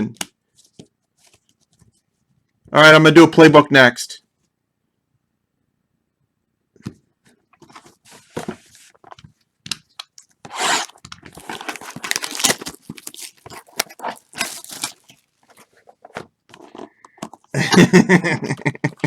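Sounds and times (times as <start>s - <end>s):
foil wrapper crinkling: 10.0s - 16.2s
wrapper tearing: 10.5s - 16.7s.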